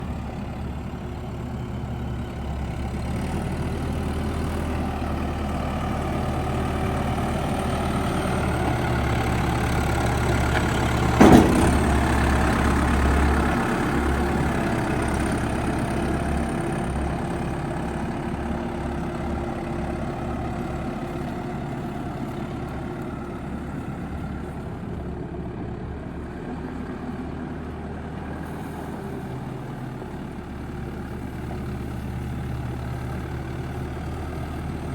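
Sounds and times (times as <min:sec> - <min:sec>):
diesel engine running: 0:00.0 - 0:34.9
sharp knock: 0:11.2 - 0:12.4.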